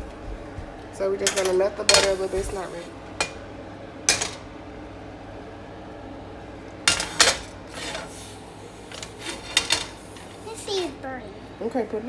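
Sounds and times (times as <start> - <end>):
utensils clanking on pan and dishes: 1.2 - 3.5, 4.1 - 4.5, 6.9 - 11.0.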